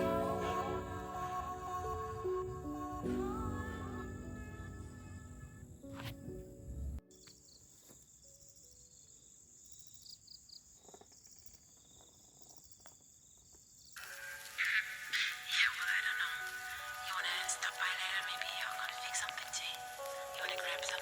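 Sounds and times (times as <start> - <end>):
background music: 0.0 - 7.3, 14.0 - 21.0
insect chirring: 7.1 - 21.0.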